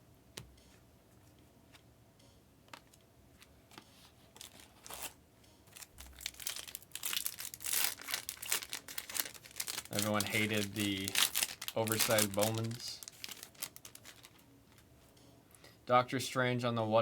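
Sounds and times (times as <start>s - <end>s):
foil wrapper tearing and crinkling: 5.8s - 14.8s.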